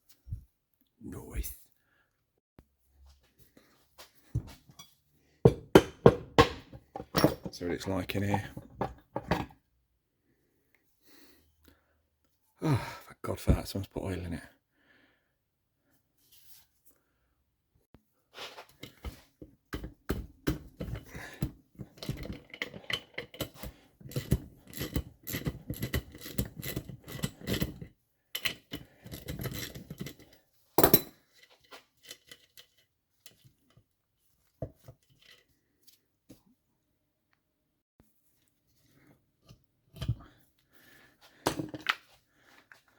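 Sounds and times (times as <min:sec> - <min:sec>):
metal engine parts clinking: 0:07.0 - 0:07.8.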